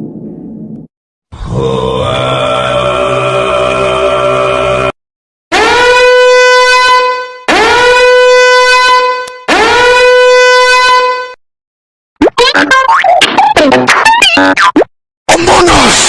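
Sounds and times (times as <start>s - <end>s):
buzzy horn blasts: 5.5s - 11.4s
cartoonish sound effects: 12.2s - 16.0s.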